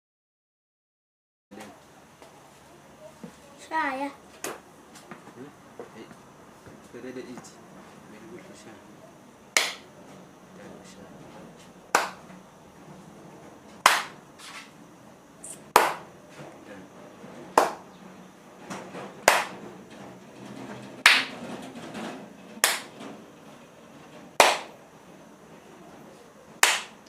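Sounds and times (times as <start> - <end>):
loud finger snaps: 9.6 - 9.9, 11.9 - 12.2, 13.8 - 14.2, 15.5 - 16.0, 17.6 - 17.8, 19.3 - 19.5, 22.6 - 22.9, 24.4 - 24.7, 26.6 - 27.0.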